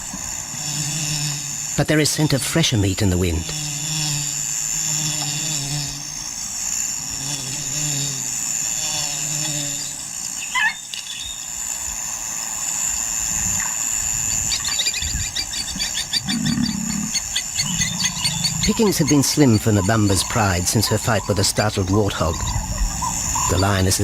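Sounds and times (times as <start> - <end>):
insects buzzing: 0.0 - 24.0
rapid chirping: 13.5 - 24.0.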